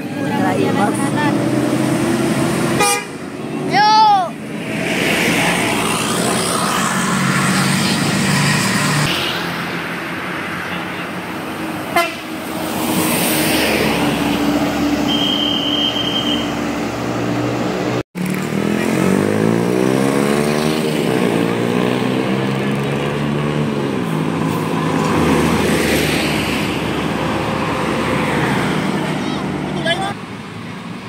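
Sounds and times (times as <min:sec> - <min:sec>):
bus engines running: 0:00.0 - 0:31.0
vehicle accelerating past: 0:17.2 - 0:29.7.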